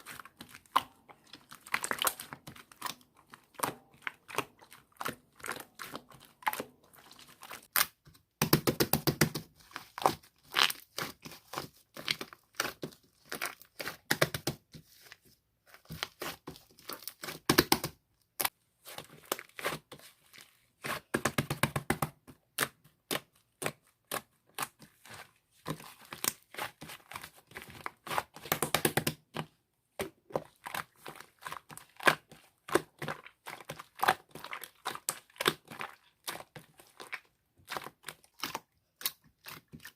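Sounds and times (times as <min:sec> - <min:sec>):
hands squishing slime: 0:00.0 - 0:39.9.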